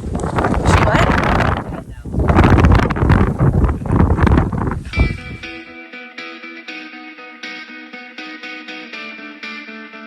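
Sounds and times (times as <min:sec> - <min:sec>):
wind buffeting microphone: 0:00.0 - 0:05.6.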